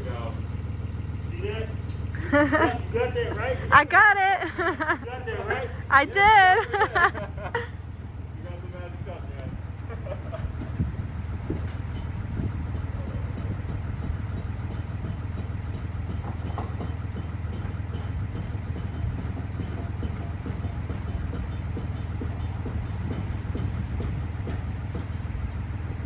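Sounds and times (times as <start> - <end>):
truck engine idling: 0.0 - 26.0
faint knocks and rattles: 10.1 - 26.0.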